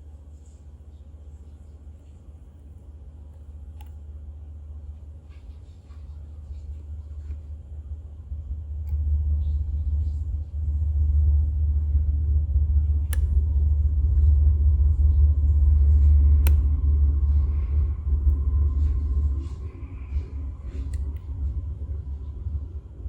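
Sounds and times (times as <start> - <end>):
loud deep rumble: 8.3 - 23.0.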